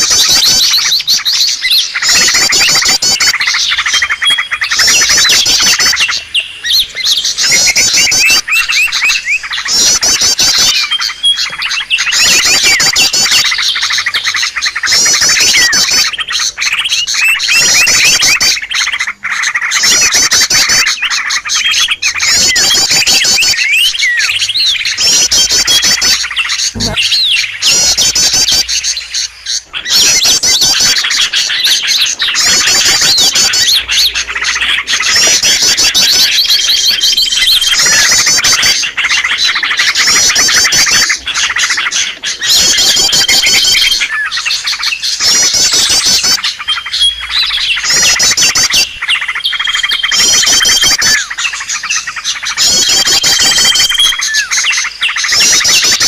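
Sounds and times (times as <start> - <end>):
songbird chattering trills: 0.0 - 56.0.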